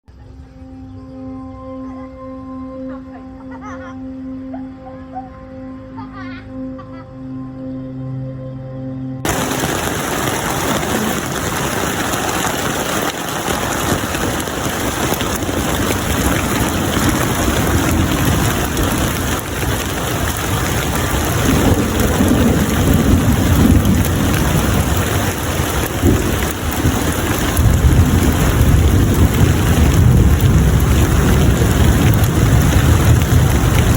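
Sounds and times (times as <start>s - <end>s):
heavy rain falling: 9.2s - 33.9s.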